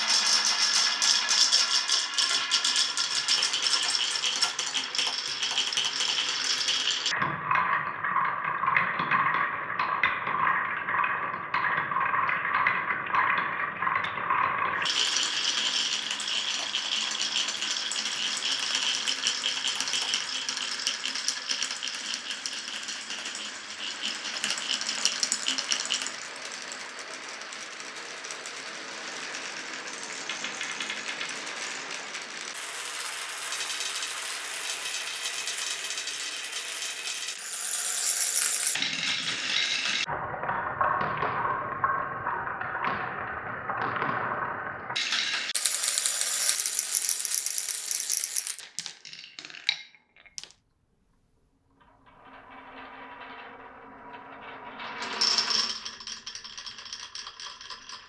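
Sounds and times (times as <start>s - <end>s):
marbles clattering down wooden run: 0.0s - 7.2s, 14.8s - 40.1s, 45.0s - 50.5s, 53.8s - 58.0s.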